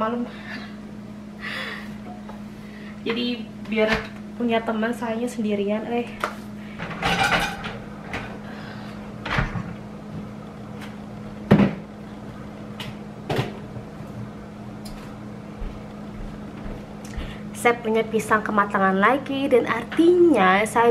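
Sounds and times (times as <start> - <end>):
steady low hum: 0.0 - 20.9.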